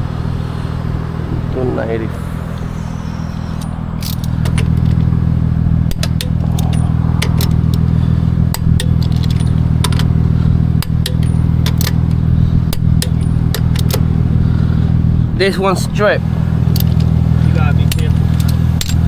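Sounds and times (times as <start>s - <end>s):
vehicle engine running: 0.0s - 19.0s
metallic clinks of tools: 5.9s - 7.9s, 16.7s - 17.1s, 17.8s - 19.0s.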